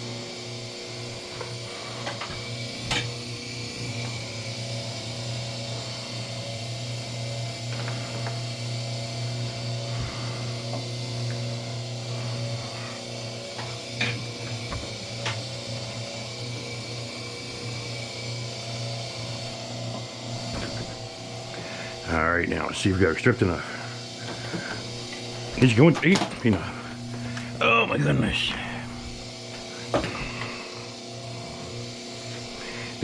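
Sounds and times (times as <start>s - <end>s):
wire stripping machine motor hum: 0.0s - 33.0s.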